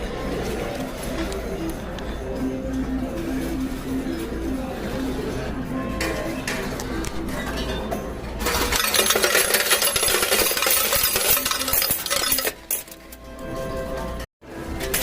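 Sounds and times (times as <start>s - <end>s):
coins clattering: 8.4s - 13.3s.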